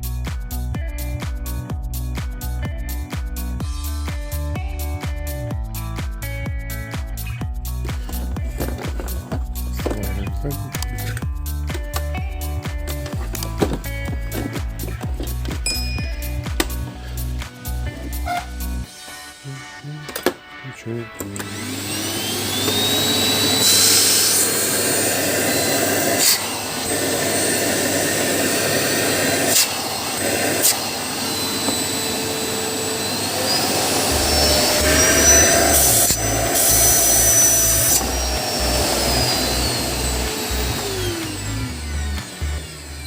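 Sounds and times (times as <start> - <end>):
vacuum cleaner motor whine: 8.0 - 10.2, 21.2 - 43.0.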